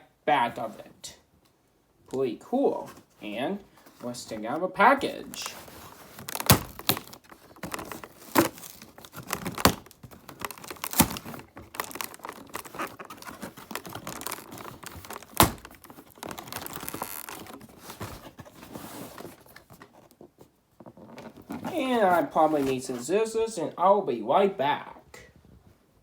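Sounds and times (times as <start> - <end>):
toy packaging being handled: 2.5 - 23.1.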